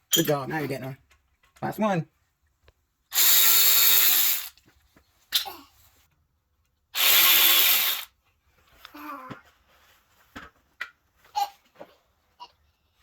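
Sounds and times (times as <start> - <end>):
cordless ratchet spinning bolt: 7.0 - 8.1.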